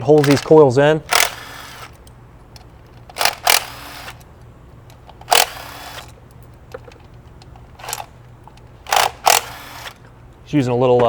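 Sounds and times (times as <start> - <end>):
impact driver bursts: 0.0 - 2.0, 3.1 - 4.2, 5.2 - 6.2, 8.8 - 10.0
low steady hum: 0.0 - 11.0.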